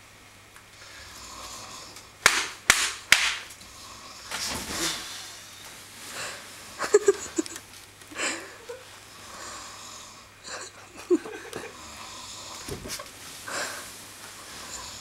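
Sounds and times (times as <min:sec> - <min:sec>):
person snoring: 0:00.8 - 0:02.0, 0:08.2 - 0:15.0.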